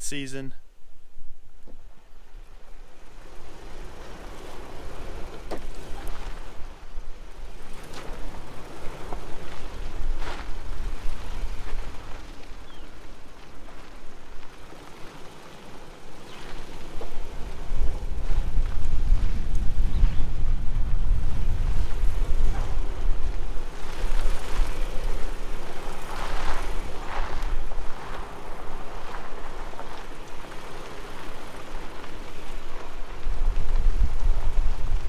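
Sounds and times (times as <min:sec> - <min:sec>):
tyres crunching on gravel: 0:21.6 - 0:33.3.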